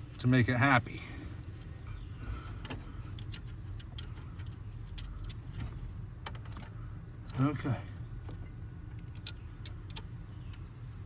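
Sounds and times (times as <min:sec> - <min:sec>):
low steady hum: 0:00.0 - 0:11.0
light metallic clicks and ticks: 0:02.6 - 0:10.7.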